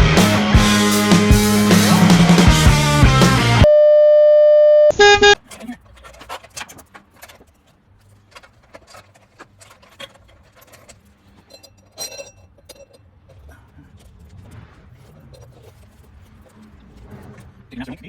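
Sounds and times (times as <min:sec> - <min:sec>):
metal chain clinking and rattling: 0:08.3 - 0:13.5.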